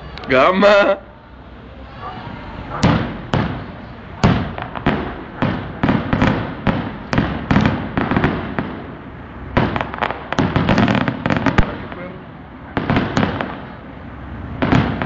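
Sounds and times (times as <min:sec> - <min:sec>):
fireworks bangs echoing: 0:02.1 - 0:15.0.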